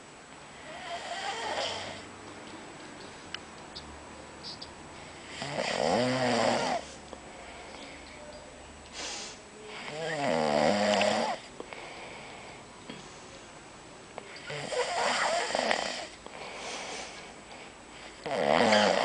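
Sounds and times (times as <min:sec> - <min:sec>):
man snoring: 0:00.6 - 0:02.1, 0:05.3 - 0:06.9, 0:09.9 - 0:11.4, 0:14.4 - 0:16.1, 0:18.2 - 0:19.0
soft breath: 0:06.8 - 0:08.2, 0:11.6 - 0:13.6, 0:16.2 - 0:18.2.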